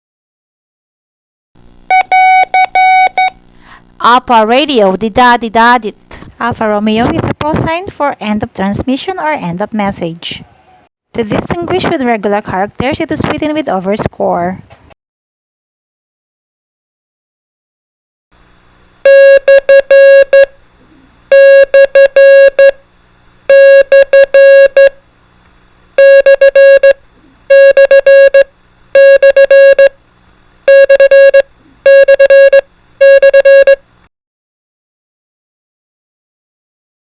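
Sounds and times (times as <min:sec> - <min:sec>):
morse code beeps: 0:01.9 - 0:03.4, 0:19.1 - 0:20.5, 0:21.3 - 0:22.8, 0:23.5 - 0:25.0, 0:26.0 - 0:29.9, 0:30.7 - 0:33.8.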